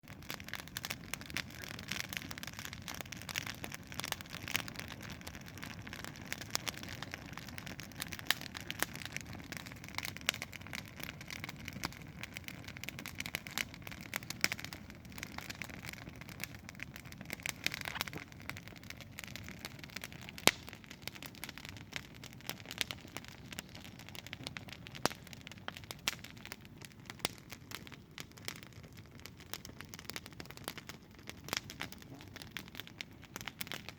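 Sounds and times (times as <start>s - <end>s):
campfire crackling and popping: 0.0s - 33.9s.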